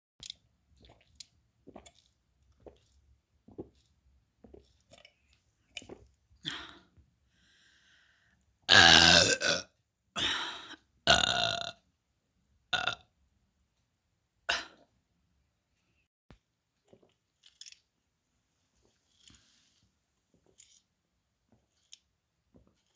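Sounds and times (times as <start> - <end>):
person burping through voice filter: 8.7 - 10.4, 11.1 - 11.8, 12.8 - 13.0, 14.5 - 14.8.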